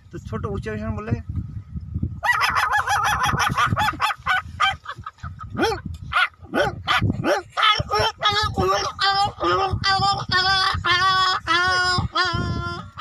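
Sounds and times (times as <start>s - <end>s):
man imitating puppy yips: 2.2s - 4.8s, 5.5s - 13.0s.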